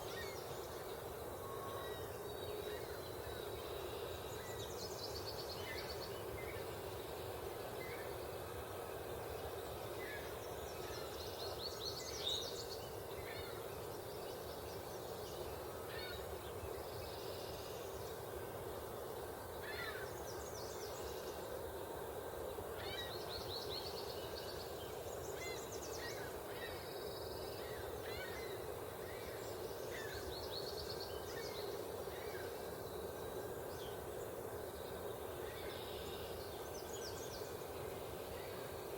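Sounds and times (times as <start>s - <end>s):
low background noise: 0.0s - 38.9s
songbirds singing and calling: 19.4s - 38.9s.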